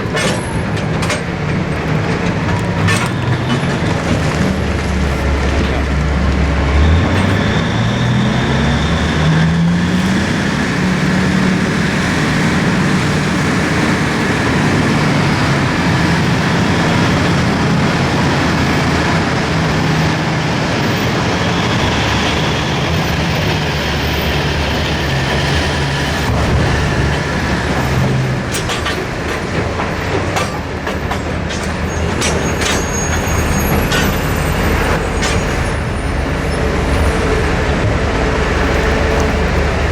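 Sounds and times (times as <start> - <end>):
knocks and clatter: 0.0 - 7.5, 25.4 - 36.3
excavator diesel engine working: 0.0 - 39.9.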